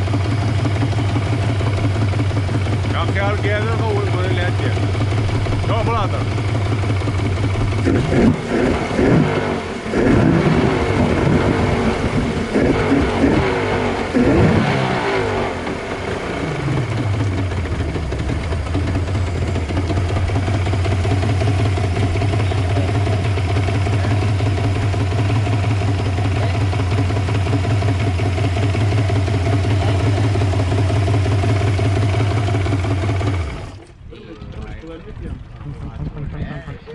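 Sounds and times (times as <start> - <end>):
outboard engine revving and idling: 0.0 - 36.9.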